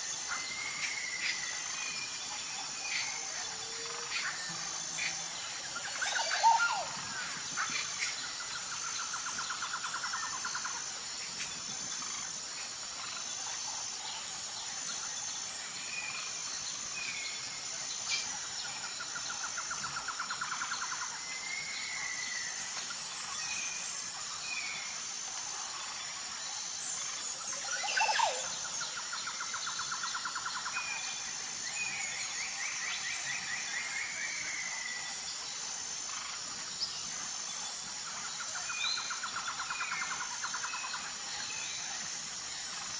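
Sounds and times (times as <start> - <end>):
birds calling and trilling: 0.0 - 20.8
insects droning: 0.0 - 42.9.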